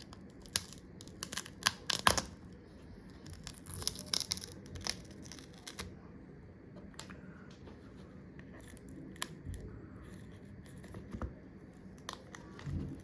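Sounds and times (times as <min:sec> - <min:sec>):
glass snapping and crackling: 0:00.2 - 0:02.4, 0:03.3 - 0:05.8.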